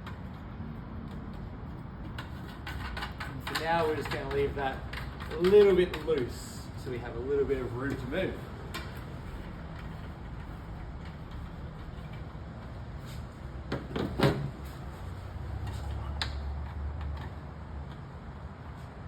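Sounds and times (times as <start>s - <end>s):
plastic pipes knocking and clicking: 2.0s - 6.3s.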